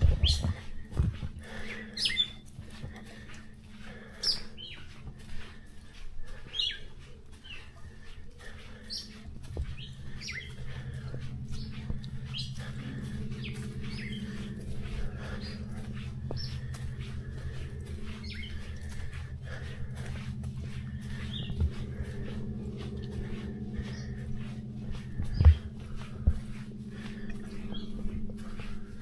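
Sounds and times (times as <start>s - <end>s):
bird chirping: 0.0s - 0.6s, 1.7s - 2.4s, 4.2s - 4.9s, 6.5s - 7.8s, 8.4s - 19.0s, 20.7s - 25.8s
low steady hum: 0.0s - 29.0s.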